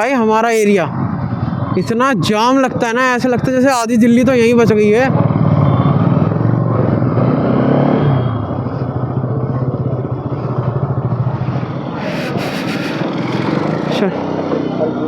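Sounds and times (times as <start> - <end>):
motorcycle engine running: 4.2 - 15.0.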